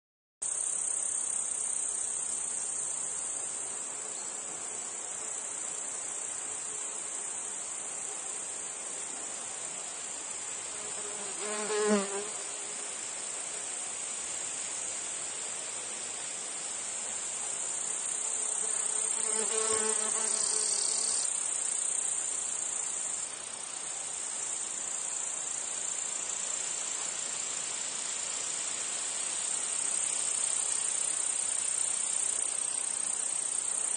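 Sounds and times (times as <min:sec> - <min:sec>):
insects chirring: 0:00.4 - 0:08.4, 0:17.5 - 0:33.9
fly buzzing past: 0:10.7 - 0:12.7, 0:18.3 - 0:21.3.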